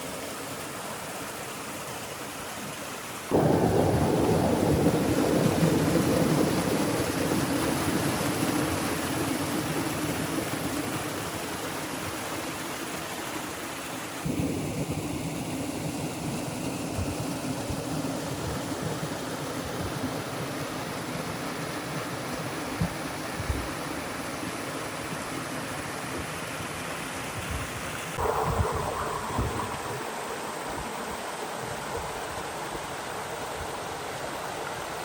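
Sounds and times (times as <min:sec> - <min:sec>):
rushing water with low rumble: 0:00.0 - 0:35.0.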